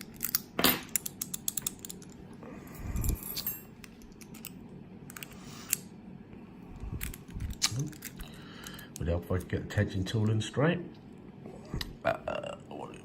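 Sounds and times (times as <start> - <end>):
padlock clicking and rattling: 0.0 - 2.2.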